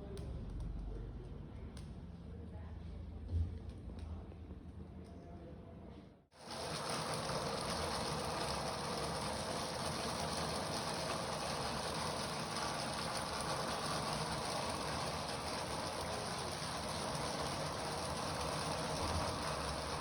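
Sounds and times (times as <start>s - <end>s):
rapid mechanical clatter: 6.4s - 20.0s.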